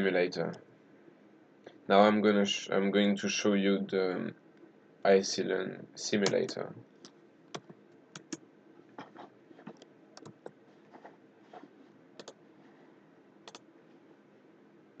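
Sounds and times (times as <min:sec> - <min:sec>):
faint steady hum: 0:00.0 - 0:15.0
mouse and keyboard clicking: 0:09.0 - 0:10.6, 0:12.2 - 0:12.4.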